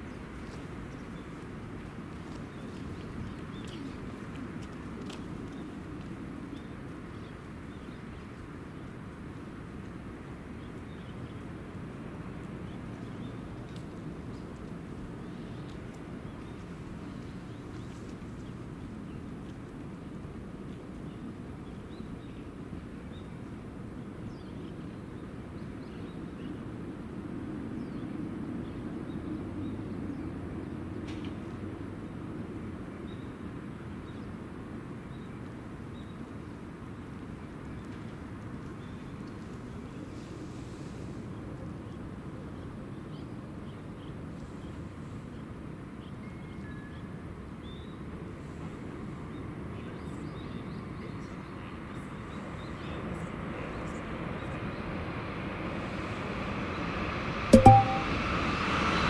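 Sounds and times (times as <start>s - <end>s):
low rumble of trains and traffic: 0.0s - 57.1s.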